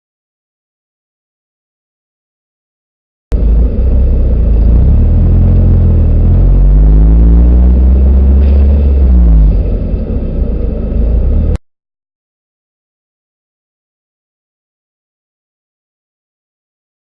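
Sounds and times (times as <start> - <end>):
vehicle engine accelerating: 3.3 - 11.6.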